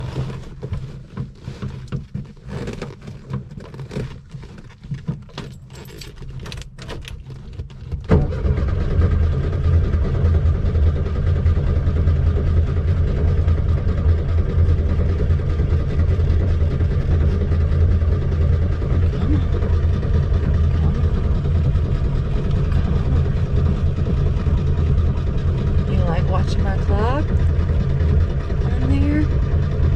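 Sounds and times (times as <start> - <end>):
car engine loud steady drone: 0.0 - 29.9
light clicks and rattles: 0.4 - 8.1.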